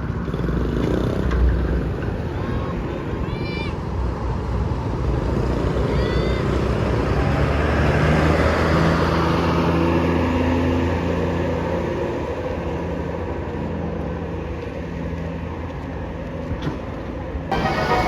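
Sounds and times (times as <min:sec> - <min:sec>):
diesel engine hum: 0:17.5 - 0:18.0.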